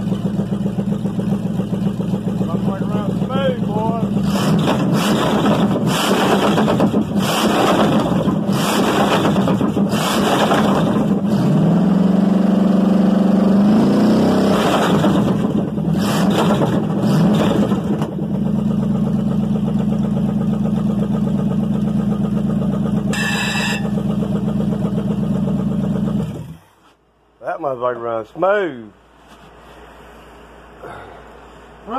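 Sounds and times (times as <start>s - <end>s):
car engine revving and idling: 0.0s - 26.9s.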